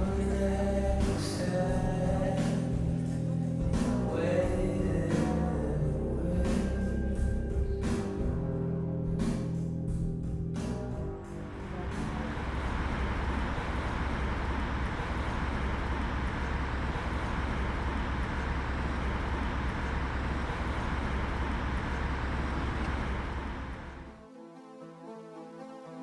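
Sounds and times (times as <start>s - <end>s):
traffic rumble: 11.2s - 24.2s.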